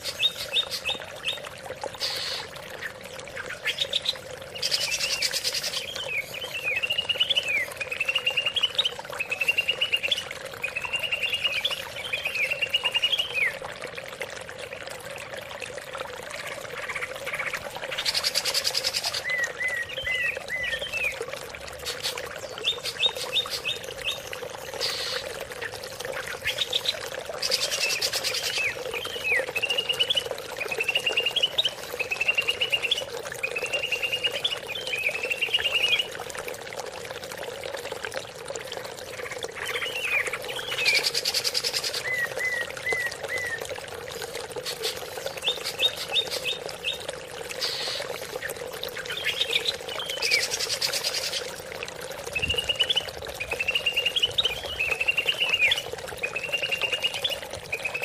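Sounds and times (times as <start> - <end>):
trickle of running water: 0.0 - 58.0
harsh rattling bird call: 2.0 - 2.4
bird singing chattering phrases: 21.8 - 36.0, 44.6 - 51.5.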